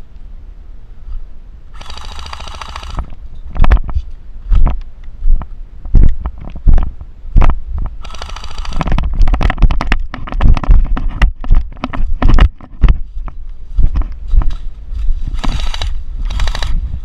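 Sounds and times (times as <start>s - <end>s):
heavy footsteps: 8.8s - 15.7s
gear rattling: 15.3s - 16.8s.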